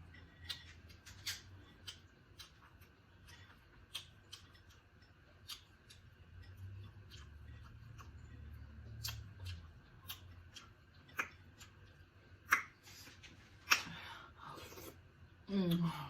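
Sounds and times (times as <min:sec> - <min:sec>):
chewing clicks and smacks: 0:00.0 - 0:12.8
faint low hum: 0:00.0 - 0:16.0.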